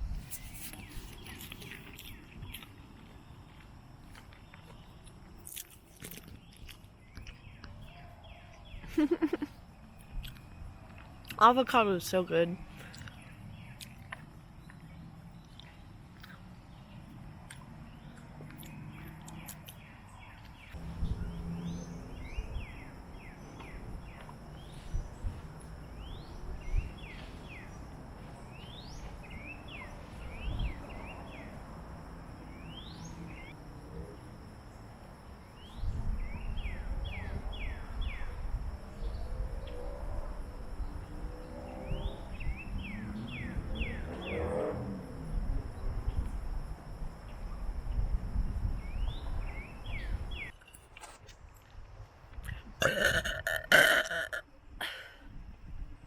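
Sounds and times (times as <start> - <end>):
birds chirping: 52.8 - 54.4.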